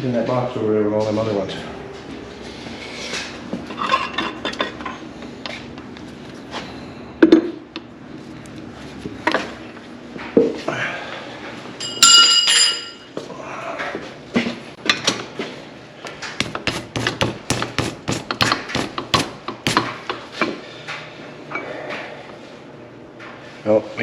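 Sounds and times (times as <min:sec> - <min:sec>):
metal parts knocking and clinking: 0:11.8 - 0:13.1
ringing metallic clang: 0:11.8 - 0:13.1.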